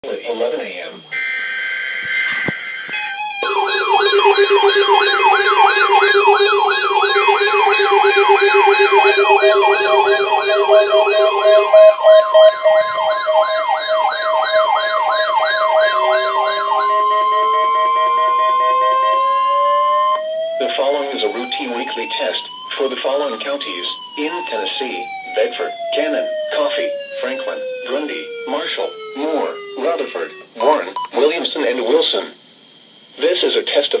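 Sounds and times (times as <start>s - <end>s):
steady low siren tones: 1.1s - 30.8s
electronic siren yelp: 1.1s - 31.0s
steady high alarm tone: 1.1s - 31.2s
tone rising in pitch: 1.2s - 22.2s.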